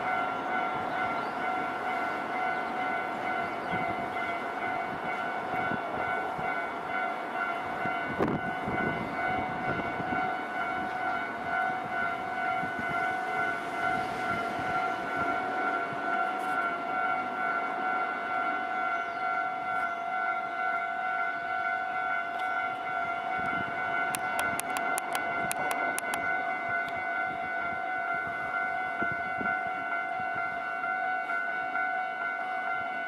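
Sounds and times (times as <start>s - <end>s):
electronic crossing alarm ringing: 0.0s - 33.0s.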